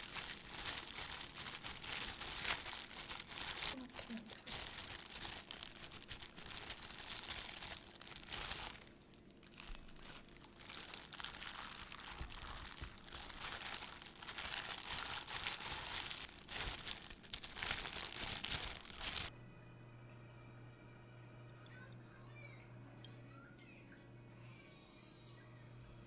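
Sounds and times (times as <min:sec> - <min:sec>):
wrapping crinkling and rustling: 0:00.0 - 0:19.3.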